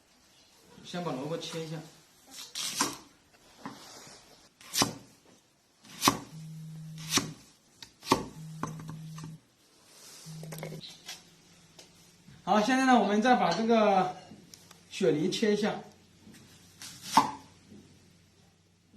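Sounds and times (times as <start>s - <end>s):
knife chopping radish on board: 2.6s - 3.1s, 4.7s - 5.1s, 5.9s - 6.3s, 7.0s - 7.4s, 16.8s - 17.5s.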